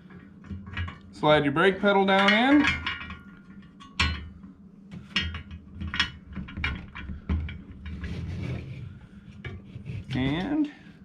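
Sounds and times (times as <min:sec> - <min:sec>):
low steady hum: 0:00.0 - 0:11.0
metal pedal clinking and knocking: 0:02.0 - 0:04.3, 0:05.0 - 0:08.0.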